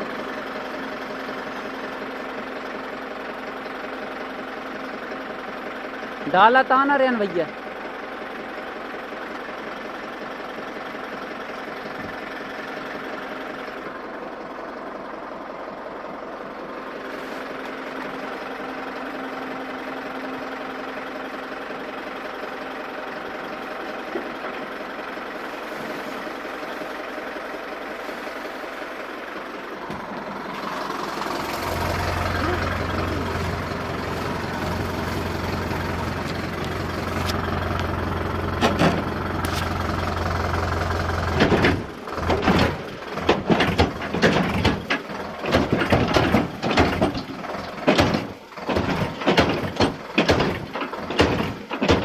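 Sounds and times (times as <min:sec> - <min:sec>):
machine engine running steadily: 0:00.0 - 0:52.0.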